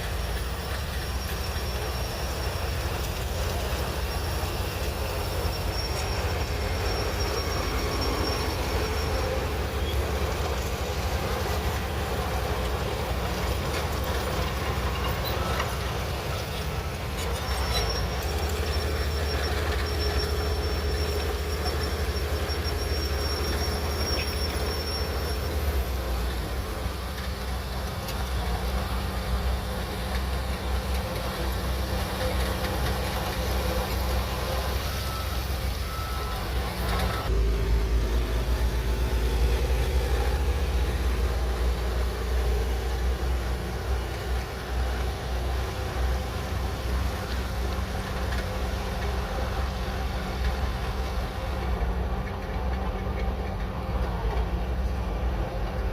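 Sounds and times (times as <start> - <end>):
bulldozer diesel engine rumbling: 0.0 - 55.9
bulldozer tracks: 0.0 - 55.9.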